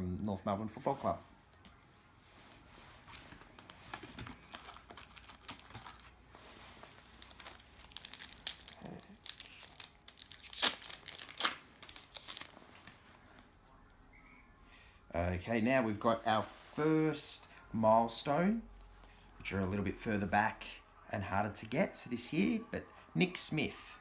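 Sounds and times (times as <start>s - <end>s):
wrapper crinkling and tearing: 3.0s - 13.2s.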